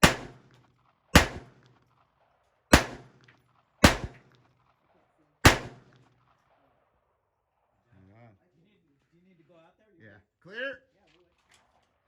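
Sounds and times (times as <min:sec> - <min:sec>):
rifle shots with ringing echo: 0:00.0 - 0:04.6, 0:05.4 - 0:06.9.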